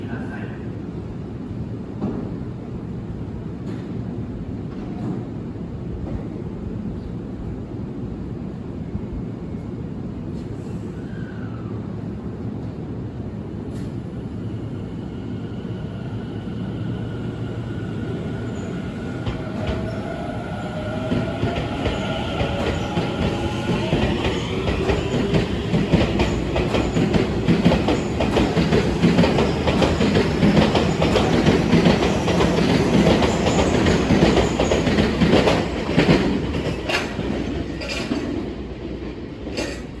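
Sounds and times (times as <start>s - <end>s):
train cars rumbling past: 13.6s - 40.0s.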